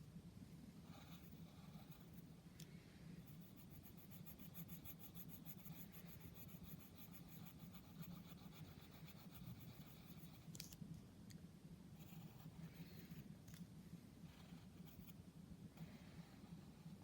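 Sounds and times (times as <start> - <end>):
drawing tool scratching paper: 0.8 - 2.2, 3.3 - 10.5, 14.3 - 15.2, 15.8 - 17.0.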